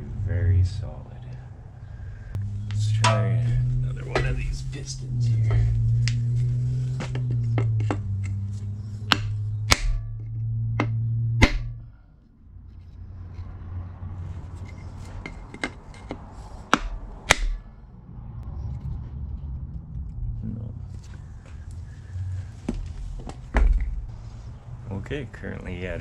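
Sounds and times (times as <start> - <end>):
hammer striking metal: 2.7 - 6.0, 9.1 - 11.9, 15.6 - 17.8.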